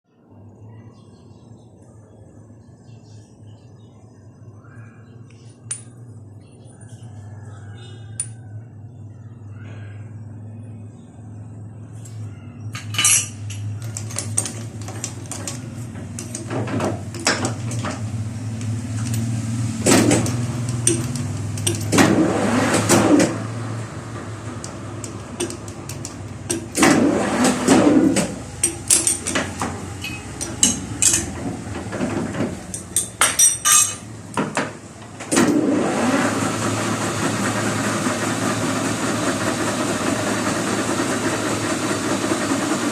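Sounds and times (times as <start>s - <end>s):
metal tools clinking: 12.7s - 22.5s, 24.6s - 31.5s, 32.6s - 34.7s
machine running: 13.8s - 33.1s, 35.3s - 42.9s.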